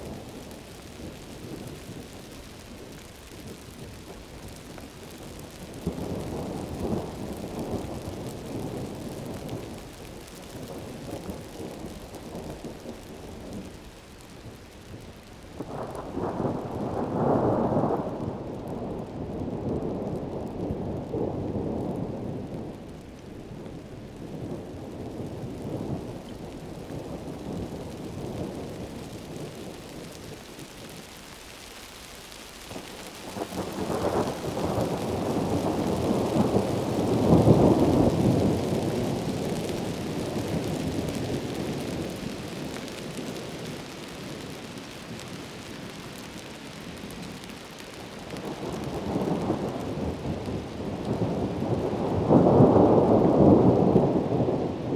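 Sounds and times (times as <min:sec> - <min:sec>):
heavy rain hissing: 0:21.0 - 0:54.9
rolling thunder: 0:48.5 - 0:54.9.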